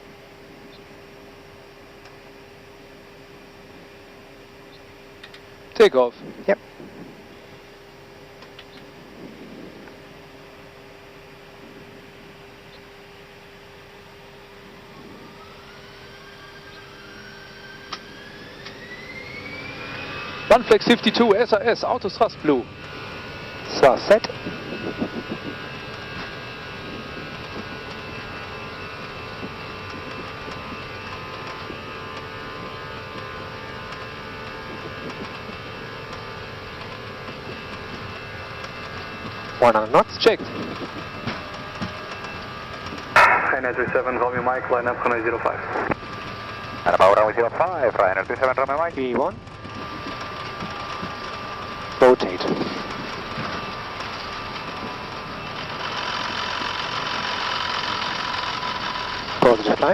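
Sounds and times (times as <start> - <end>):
airflow and runway noise: 0.0 - 59.9
jet engines roaring: 0.0 - 59.9
thin steady whine: 0.0 - 59.9
faint steady hum: 40.4 - 59.8.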